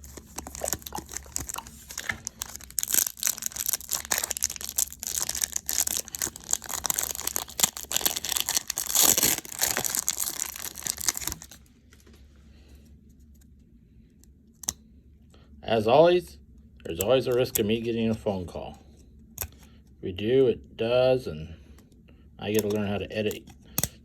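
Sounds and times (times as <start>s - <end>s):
wrapper tearing and crinkling: 0.0s - 11.6s.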